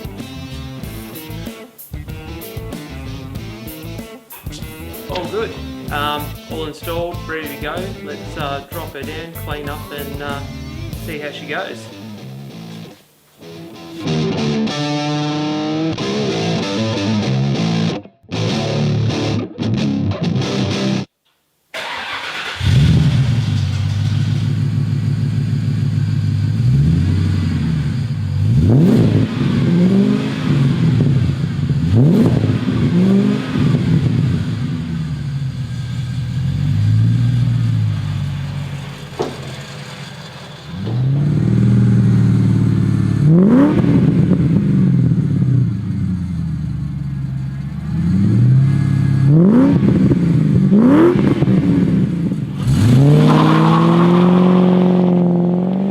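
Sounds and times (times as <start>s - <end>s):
car engine starting and idling: 0.0s - 15.1s, 21.7s - 55.9s
guitar music: 0.0s - 21.1s
engine revving: 21.8s - 55.9s.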